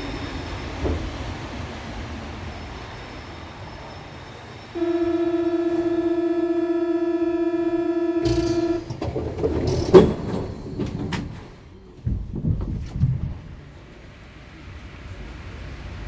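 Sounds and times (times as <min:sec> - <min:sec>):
door warning buzzer: 0:04.8 - 0:09.0
train doors slamming shut: 0:08.2 - 0:13.5.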